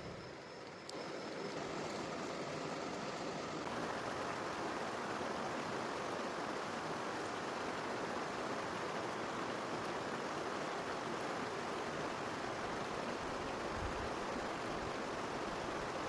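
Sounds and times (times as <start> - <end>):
river water rushing: 3.7 - 16.0.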